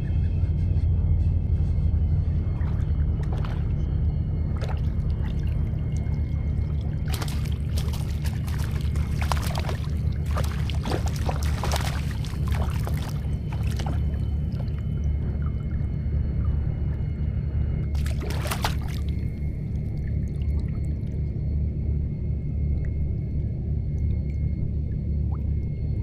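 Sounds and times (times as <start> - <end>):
steady low rumble: 0.0 - 26.0
water splashing and sloshing: 2.3 - 21.5.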